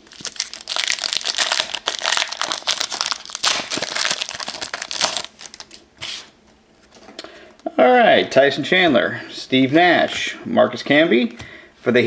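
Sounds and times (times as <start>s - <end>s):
card pack wrapper crinkling: 0.0s - 6.2s.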